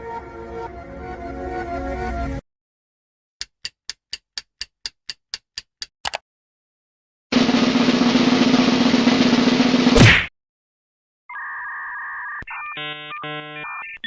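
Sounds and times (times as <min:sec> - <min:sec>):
drum roll: 0:07.3 - 0:10.1.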